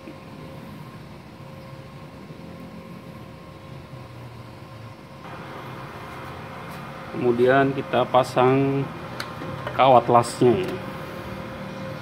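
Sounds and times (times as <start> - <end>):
cooling fan whining: 0.0 - 12.0.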